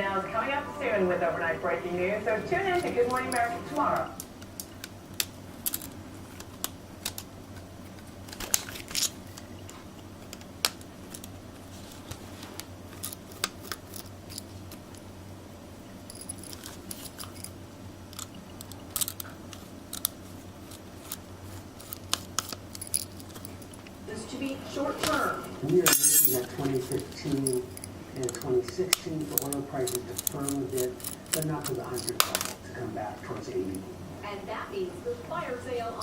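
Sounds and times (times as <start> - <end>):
steady low hum: 0.0 - 36.0
small hard objects clicking: 26.9 - 32.6.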